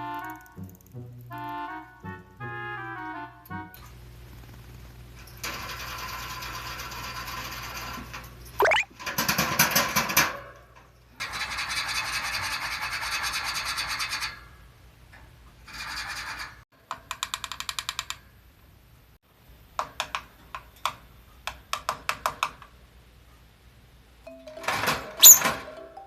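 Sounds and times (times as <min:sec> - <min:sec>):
rising squeak: 0:08.6 - 0:08.9, 0:25.1 - 0:25.6
bird rasping and scraping: 0:15.7 - 0:16.6.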